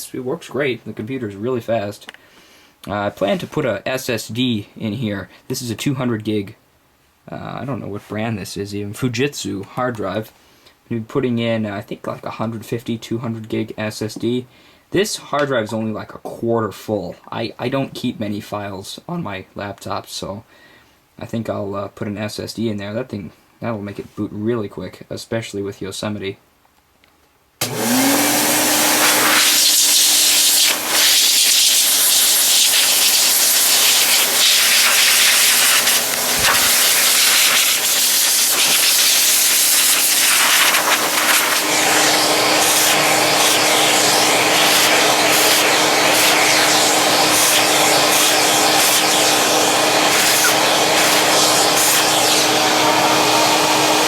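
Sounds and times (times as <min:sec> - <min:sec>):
electric motor hum: 0:27.6 - 0:54.0.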